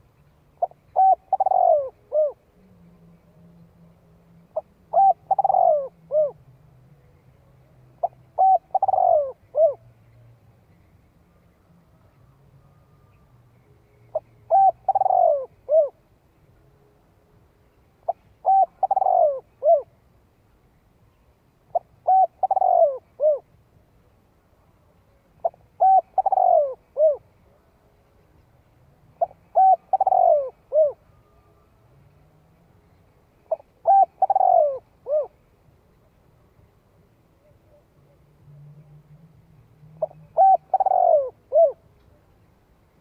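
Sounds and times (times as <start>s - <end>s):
dove cooing: 0.6s - 2.8s, 4.5s - 6.4s, 8.0s - 9.9s, 14.1s - 16.0s, 18.0s - 20.0s, 21.7s - 23.5s, 25.4s - 27.2s, 29.2s - 31.1s, 33.4s - 35.4s, 39.9s - 41.9s.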